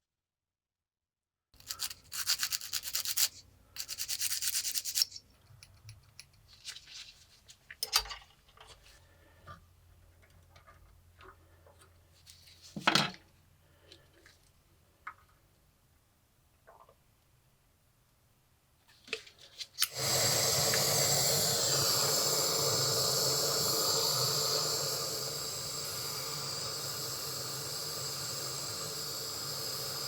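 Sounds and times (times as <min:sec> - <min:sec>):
small brush scrubbing: 0:01.6 - 0:05.2.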